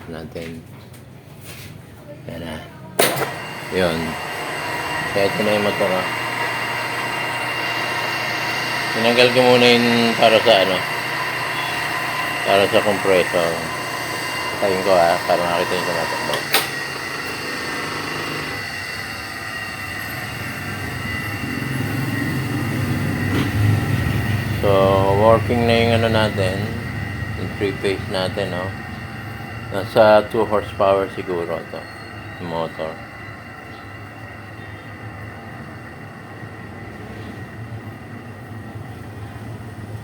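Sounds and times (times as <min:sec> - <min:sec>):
electric motor hum and whine: 0:03.0 - 0:40.0
low rumble: 0:18.6 - 0:40.0.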